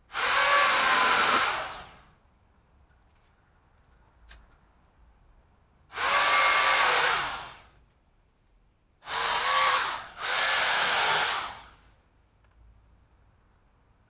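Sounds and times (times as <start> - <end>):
pole saw motor whining: 0.2 - 2.0, 6.0 - 7.6, 9.1 - 11.8.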